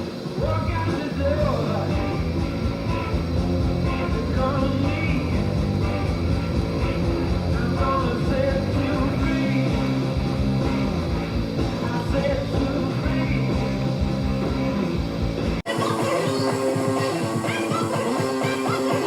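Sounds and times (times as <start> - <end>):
rock music: 0.0 - 19.0.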